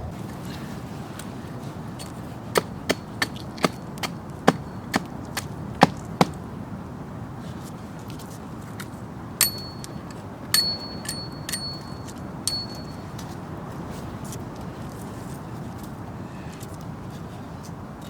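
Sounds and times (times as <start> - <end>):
chopping blows on wood: 2.6 - 6.4
metal-on-metal taps ringing: 9.4 - 13.2.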